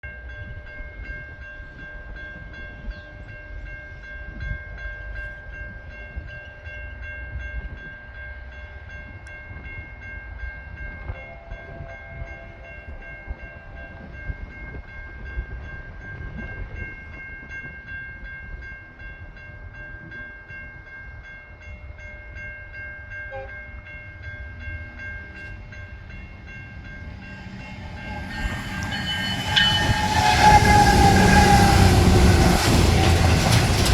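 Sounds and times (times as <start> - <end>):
level crossing warning bells: 18.5 - 33.9
rail grinder train approaching: 21.9 - 33.9.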